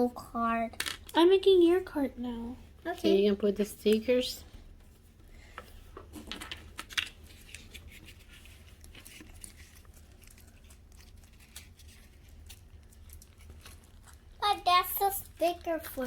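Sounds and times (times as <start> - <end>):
paper rustling: 5.4 - 16.0.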